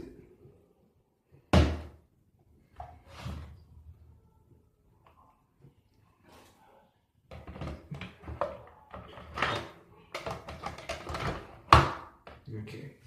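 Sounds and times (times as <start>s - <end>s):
objects clattering and rustling: 7.3s - 12.4s.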